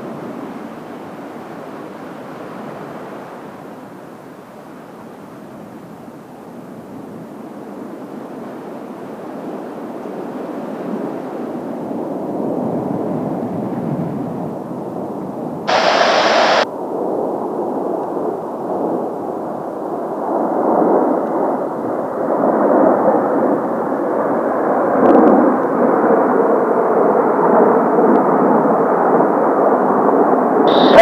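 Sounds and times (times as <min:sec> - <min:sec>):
radio static burst: 0:15.7 - 0:16.6, 0:30.7 - 0:31.0
jet roar: 0:15.7 - 0:16.7, 0:30.7 - 0:31.0.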